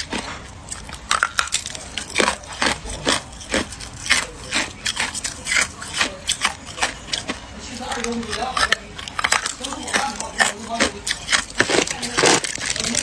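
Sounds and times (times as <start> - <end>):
ice crunching between teeth: 0.0 - 13.0.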